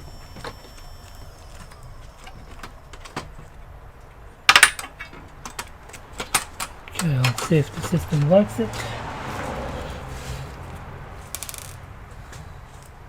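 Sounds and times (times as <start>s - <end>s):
small hard parts clicking: 0.0s - 8.4s, 10.4s - 11.8s
burst of rattling clicks: 11.2s - 11.8s.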